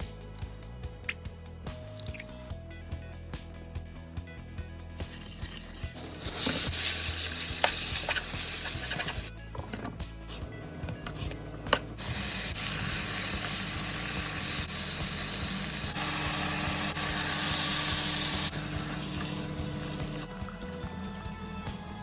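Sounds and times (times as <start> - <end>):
food sizzling in a pan: 6.2 - 9.3, 12.0 - 20.2.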